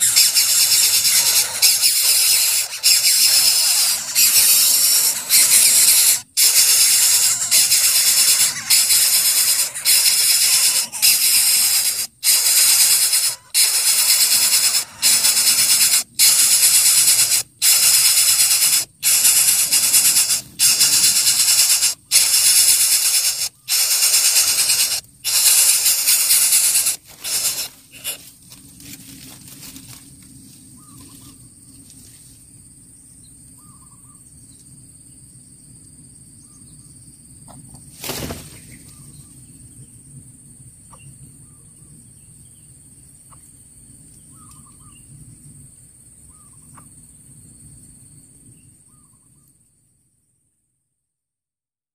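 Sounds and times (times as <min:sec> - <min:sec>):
bird chick hissing: 0:00.0 - 0:28.3.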